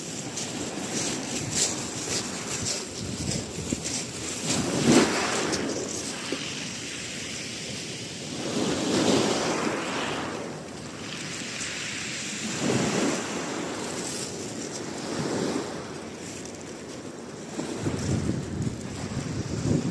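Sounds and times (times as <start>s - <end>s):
wind buffeting microphone: 0.0s - 6.9s, 17.3s - 19.9s
sea waves washing onto shore: 0.0s - 19.9s.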